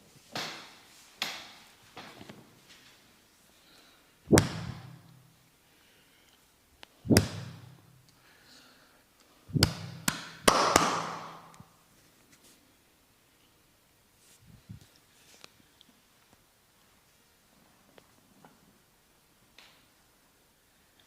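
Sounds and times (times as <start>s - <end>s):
massage strikes thumping on body: 4.3s - 5.0s, 7.1s - 7.7s, 9.5s - 11.5s.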